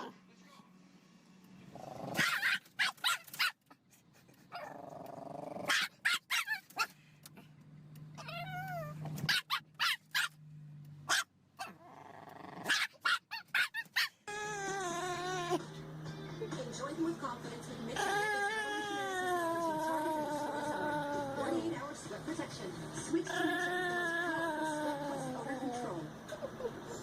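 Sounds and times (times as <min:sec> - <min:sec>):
dog growling: 0:01.6 - 0:02.4, 0:04.6 - 0:05.7, 0:11.6 - 0:12.8, 0:14.3 - 0:15.6, 0:17.9 - 0:21.8, 0:23.0 - 0:26.6
dog yipping: 0:02.2 - 0:03.8, 0:05.7 - 0:06.9, 0:08.2 - 0:10.4, 0:11.1 - 0:11.8, 0:12.6 - 0:15.6, 0:18.0 - 0:21.4.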